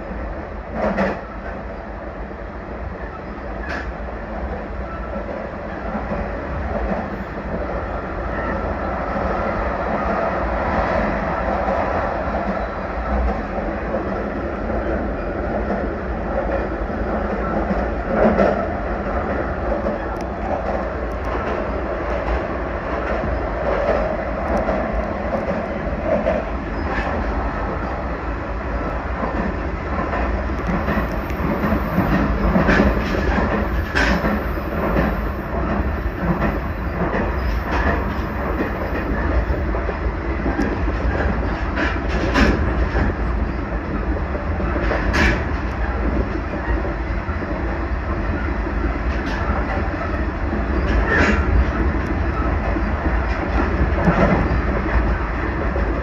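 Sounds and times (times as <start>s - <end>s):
train wheels rumbling on rail: 0.0s - 56.0s
clacks over rail joints: 0.7s - 1.6s, 12.4s - 27.9s, 28.8s - 56.0s.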